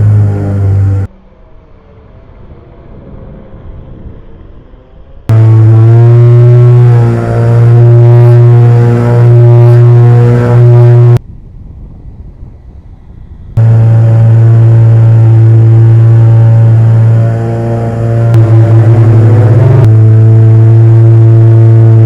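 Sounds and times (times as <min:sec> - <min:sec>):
model plane motors droning: 0:00.0 - 0:01.1, 0:05.3 - 0:11.2, 0:13.6 - 0:22.0.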